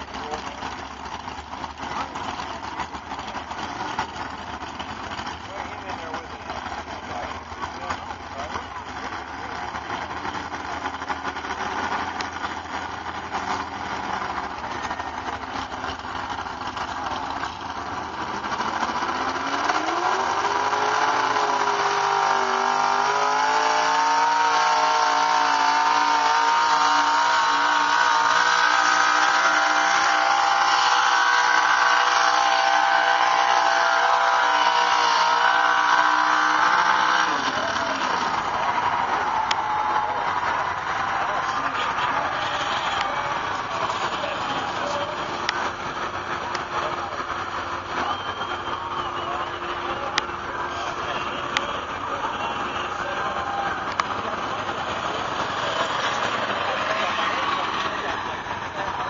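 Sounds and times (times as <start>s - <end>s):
truck engine revving under load: 0.0s - 59.0s.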